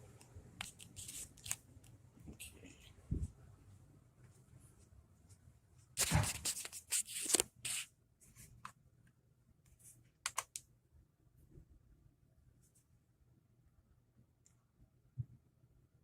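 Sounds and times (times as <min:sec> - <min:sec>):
rustling and scraping of objects: 0:04.3 - 0:08.7.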